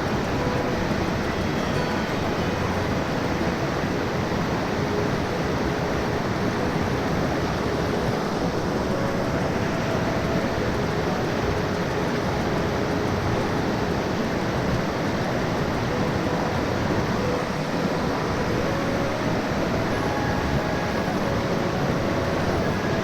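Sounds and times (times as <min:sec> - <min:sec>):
water rushing over rocks: 0:00.0 - 0:23.0.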